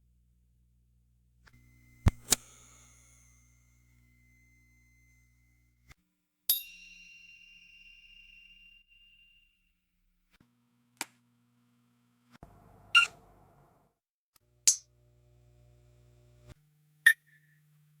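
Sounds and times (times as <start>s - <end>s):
microphone squealing pops: 2.0s - 2.4s
low electrical hum: 14.5s - 16.5s.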